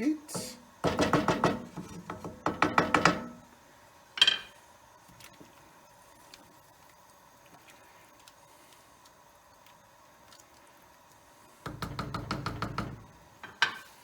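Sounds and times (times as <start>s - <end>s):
faint steady hum: 0.0s - 14.0s
kitchenware clatter: 4.2s - 4.6s, 11.7s - 14.0s.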